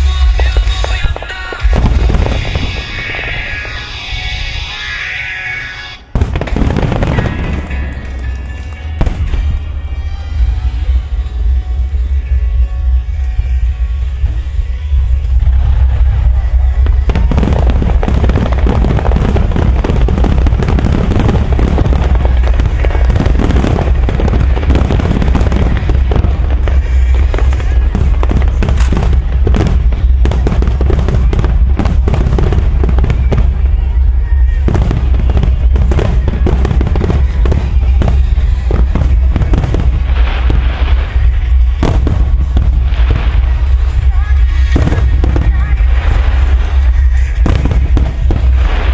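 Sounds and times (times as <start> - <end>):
fireworks low booms: 0.0 - 5.2, 6.0 - 48.9
fireworks crackling bursts: 0.0 - 48.9
show music from loudspeakers: 0.0 - 48.9.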